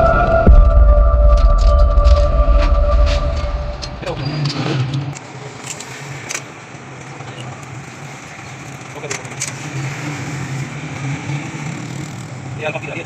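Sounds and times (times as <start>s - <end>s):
low engine drone: 0.0s - 5.1s.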